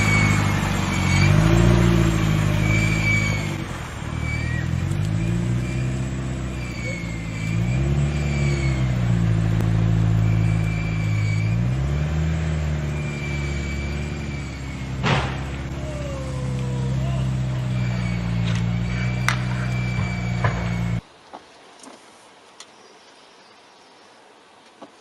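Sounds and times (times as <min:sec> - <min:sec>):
vehicle engine revving: 0:00.0 - 0:21.0
sharp knock: 0:15.0 - 0:15.7.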